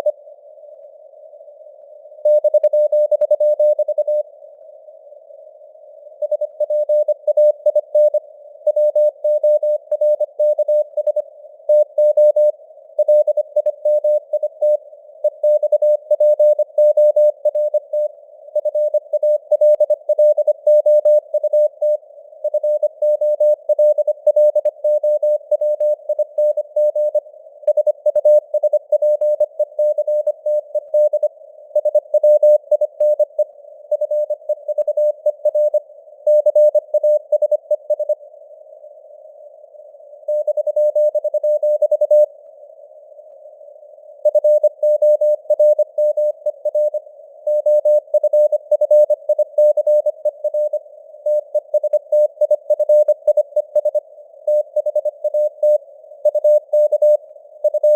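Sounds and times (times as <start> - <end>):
morse code beeps: 6.2 - 38.2, 44.3 - 57.9.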